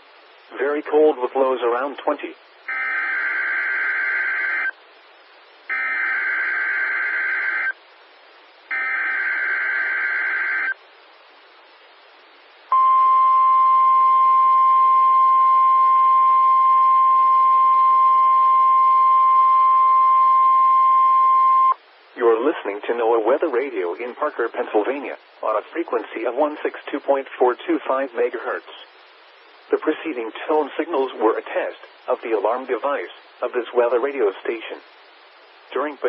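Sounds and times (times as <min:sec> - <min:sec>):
radio hiss: 0:00.0 - 0:13.5, 0:15.1 - 0:36.0
steady warning alarm tone: 0:02.7 - 0:04.7, 0:05.7 - 0:07.8, 0:08.7 - 0:10.8.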